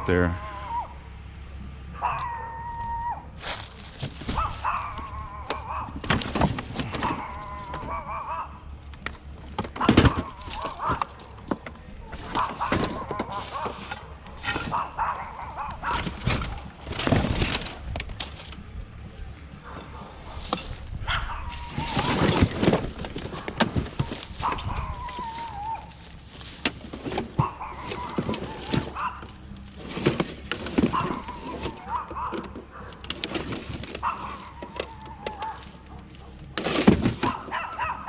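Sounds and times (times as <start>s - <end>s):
scrap metal clanking: 3.4s - 8.1s, 9.0s - 37.8s
small dog barking: 7.8s - 8.6s, 14.5s - 16.0s, 34.0s - 34.6s, 37.4s - 38.0s.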